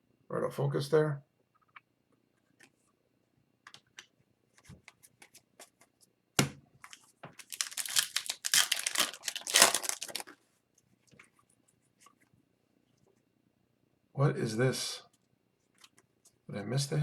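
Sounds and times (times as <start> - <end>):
foil wrapper crinkling and tearing: 6.9 - 10.4.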